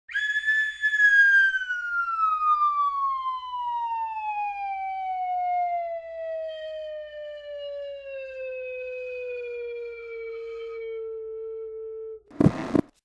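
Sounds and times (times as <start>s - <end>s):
slide whistle downward glide: 0.1s - 2.2s.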